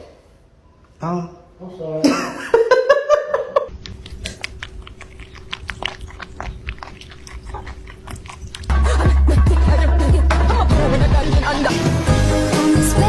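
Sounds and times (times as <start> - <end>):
faint steady hum: 3.7 - 8.8
pet chewing noisily: 3.8 - 8.8.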